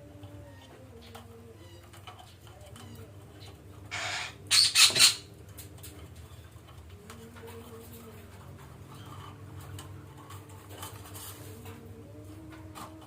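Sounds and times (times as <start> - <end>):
parakeet screeching: 3.9 - 5.3.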